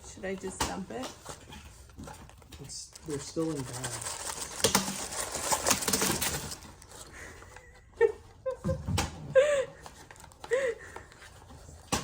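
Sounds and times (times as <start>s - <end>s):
plastic bags crinkling: 0.0s - 8.6s.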